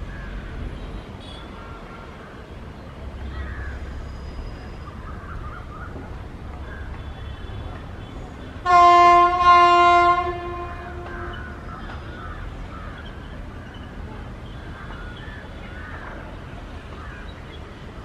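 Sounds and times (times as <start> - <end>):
train horn blasts: 8.5 - 11.6.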